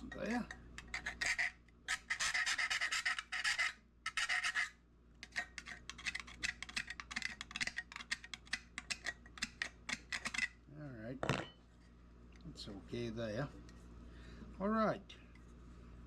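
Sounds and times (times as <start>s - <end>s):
hand file rasping over metal: 0.9s - 6.2s.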